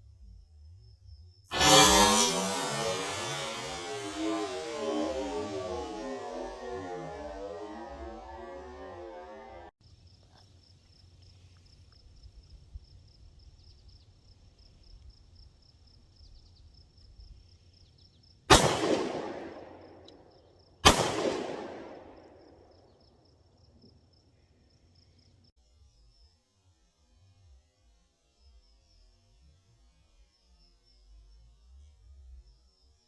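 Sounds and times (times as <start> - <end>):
pistol gunshots with echo: 18.5 - 20.1, 20.8 - 22.4.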